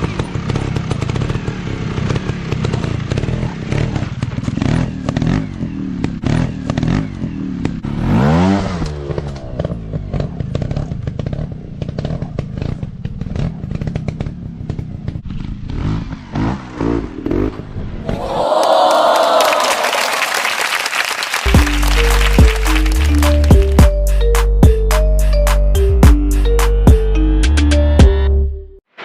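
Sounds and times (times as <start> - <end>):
motorcycle engine revving: 0.0 - 18.1.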